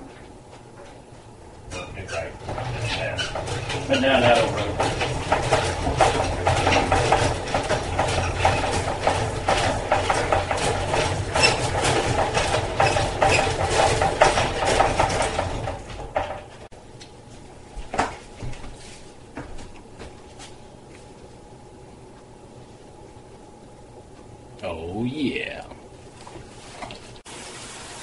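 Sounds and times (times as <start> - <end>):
clattering rattle: 1.7 - 16.7
honey extractor spinning: 1.8 - 16.7.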